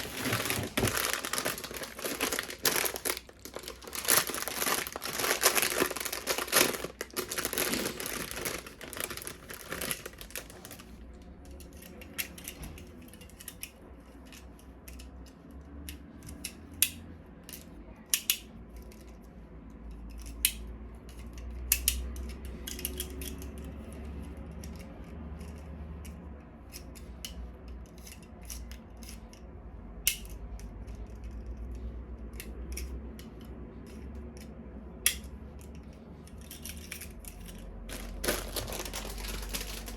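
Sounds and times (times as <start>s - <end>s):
plastic packaging crinkling: 0.0s - 11.0s, 37.8s - 39.9s
plastic toy parts clicking: 0.0s - 39.9s.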